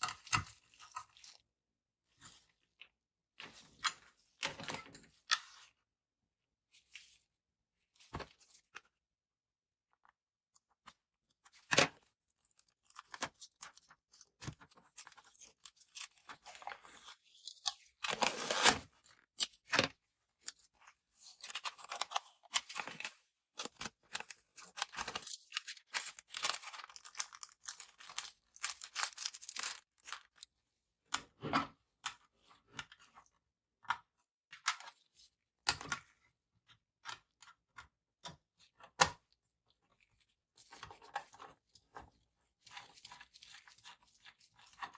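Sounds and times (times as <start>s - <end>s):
crackly packaging rustling: 21.2s - 30.5s.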